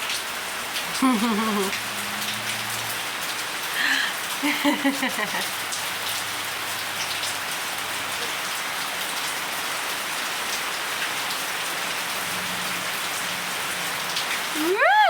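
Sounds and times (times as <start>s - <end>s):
steady rain falling: 0.0s - 15.0s
raindrops ticking: 0.1s - 7.6s.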